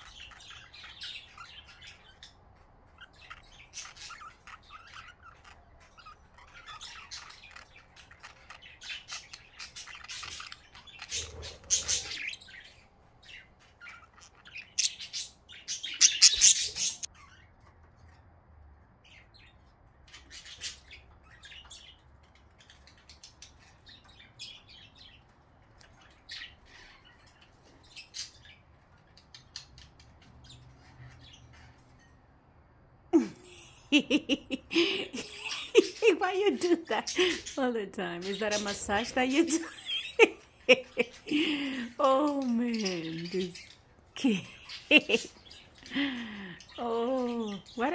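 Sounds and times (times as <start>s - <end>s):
budgerigars chirping: 0.0s - 18.3s, 19.0s - 32.1s, 33.4s - 47.9s.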